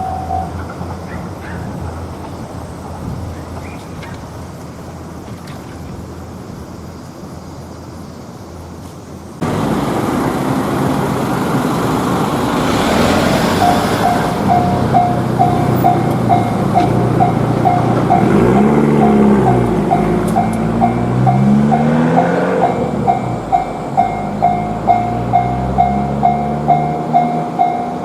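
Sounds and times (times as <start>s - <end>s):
railroad crossing bell ringing: 0.0s - 3.8s, 12.7s - 28.0s
train rumbling: 0.0s - 28.0s.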